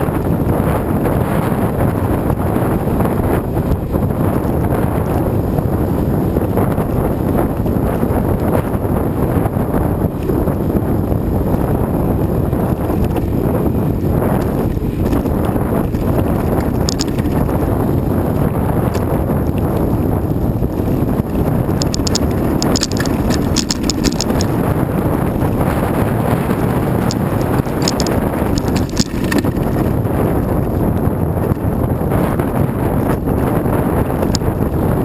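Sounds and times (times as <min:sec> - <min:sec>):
wind buffeting microphone: 0:00.0 - 0:35.0
rattling and sharp clicks: 0:14.4 - 0:17.6, 0:21.2 - 0:24.6, 0:27.0 - 0:30.0.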